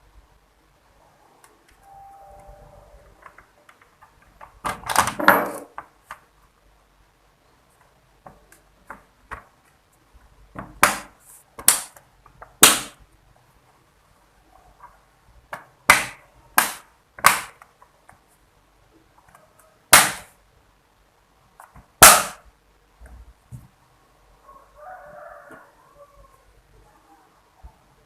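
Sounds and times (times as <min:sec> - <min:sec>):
sharp plastic snaps: 0:10.6 - 0:13.0, 0:15.5 - 0:18.2.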